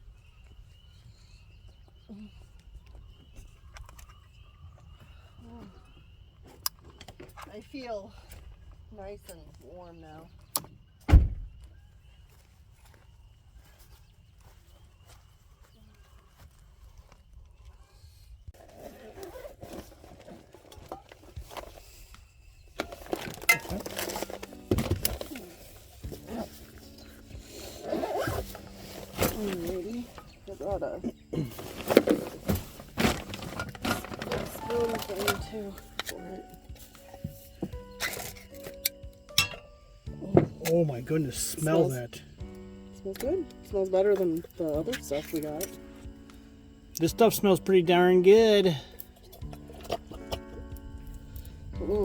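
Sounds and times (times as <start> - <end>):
crickets chirping: 0.0 - 52.0
rustling: 18.6 - 39.1
handling clicks and clinks: 22.8 - 27.0.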